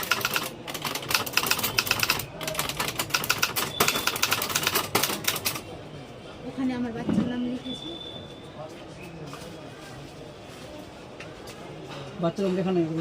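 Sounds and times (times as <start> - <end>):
typewriter keystrokes: 0.0 - 5.6.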